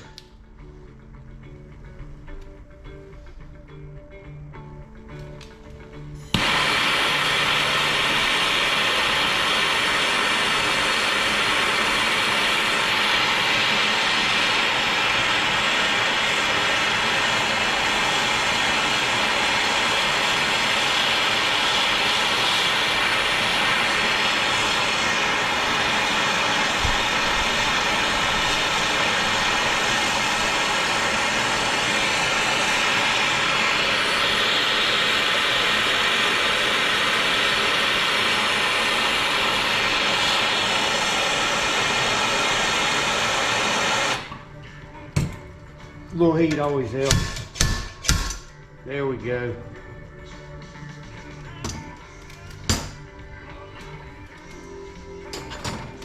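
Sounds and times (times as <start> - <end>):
gas torch flame hissing: 6.2 - 44.4.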